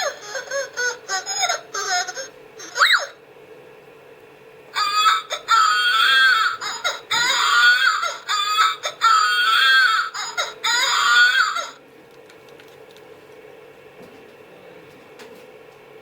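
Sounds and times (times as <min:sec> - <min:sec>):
toy doll infant cry: 0:00.0 - 0:03.2, 0:04.8 - 0:11.8.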